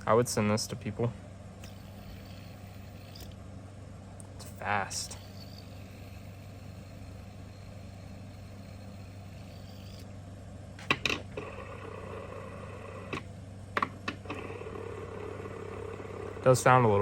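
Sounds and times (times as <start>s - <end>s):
fidget spinner whirring: 1.6s - 3.4s, 4.3s - 10.2s, 14.2s - 17.0s.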